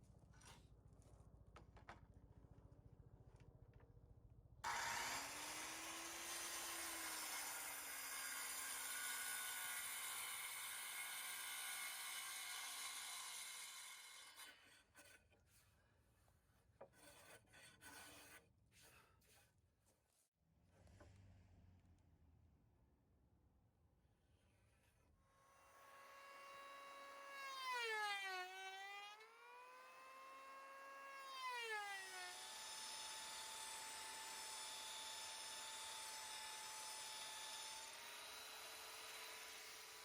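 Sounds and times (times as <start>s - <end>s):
power tool cutting wood: 4.6s - 14.6s, 25.3s - 40.0s.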